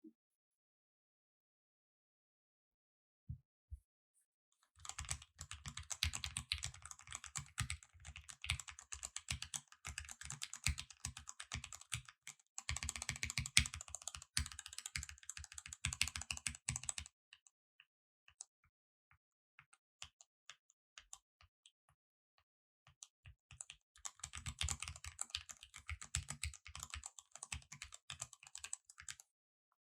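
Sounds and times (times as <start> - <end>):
mechanical keyboard typing: 4.8 - 12.0, 12.6 - 17.0, 23.6 - 29.2.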